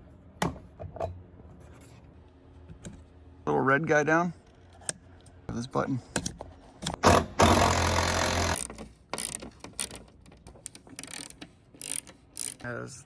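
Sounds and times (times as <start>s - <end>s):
power driver whirring: 7.1s - 8.7s.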